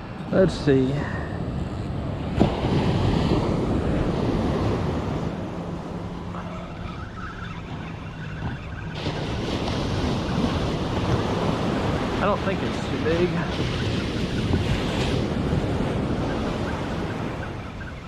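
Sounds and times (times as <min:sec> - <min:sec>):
surf washing onto beach: 0:02.2 - 0:06.5, 0:09.0 - 0:17.5
wind noise on microphone: 0:07.7 - 0:18.0.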